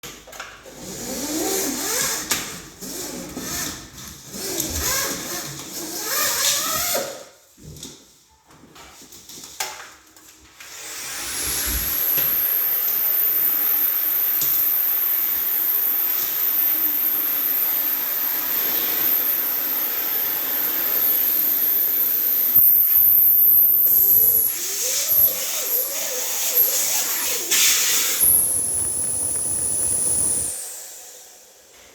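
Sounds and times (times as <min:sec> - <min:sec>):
vacuum hose rubbing and squeaking: 0:02.8 - 0:07.0, 0:22.6 - 0:30.6
vacuum suction hiss with whistle: 0:27.0 - 0:31.5.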